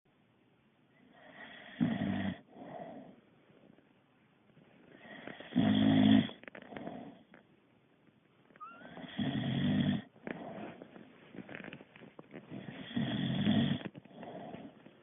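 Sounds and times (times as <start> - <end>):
dog snoring: 1.0 - 3.2, 4.9 - 7.4, 8.6 - 11.0, 12.4 - 15.0
dog breathing softly: 10.2 - 11.3.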